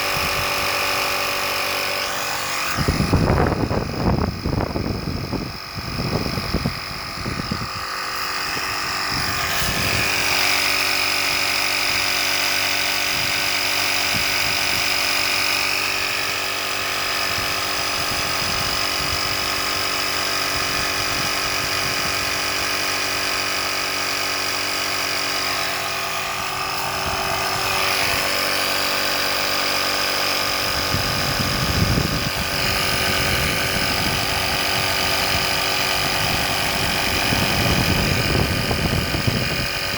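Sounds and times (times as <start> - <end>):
air compressor whining: 0.0 - 39.9.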